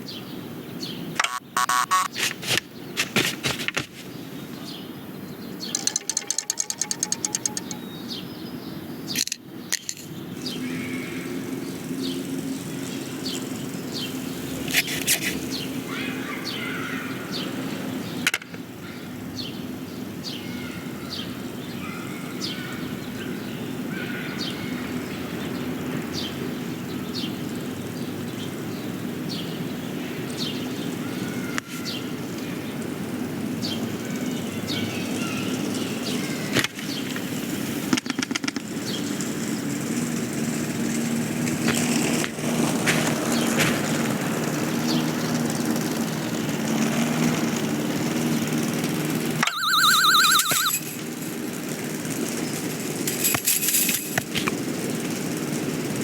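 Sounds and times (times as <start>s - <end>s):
high falling chirps: 1.2s - 2.2s, 49.4s - 51.4s.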